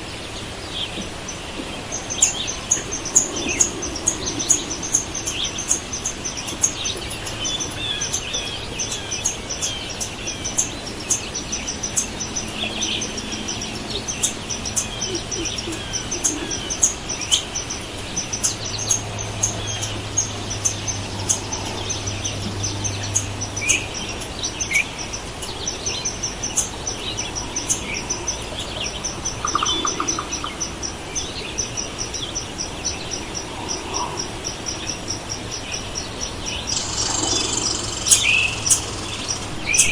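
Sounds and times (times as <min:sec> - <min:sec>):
birds singing and calling: 0:00.0 - 0:39.9
low hum: 0:18.5 - 0:24.6.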